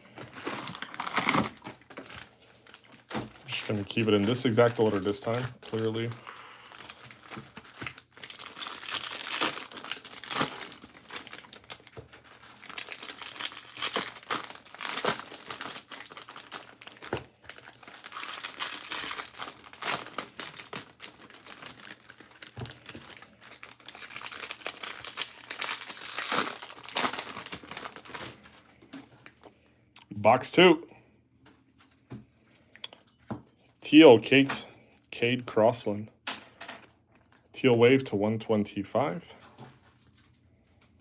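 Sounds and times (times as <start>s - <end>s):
foil wrappers crinkling and tearing: 0.1s - 28.8s.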